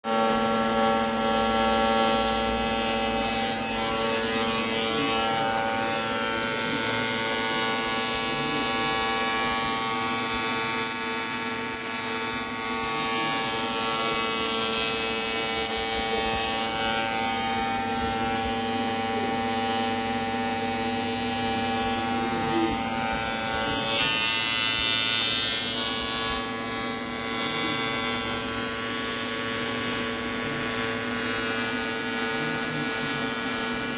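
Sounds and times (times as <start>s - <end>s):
arc welding buzz and hiss: 0.0s - 33.9s.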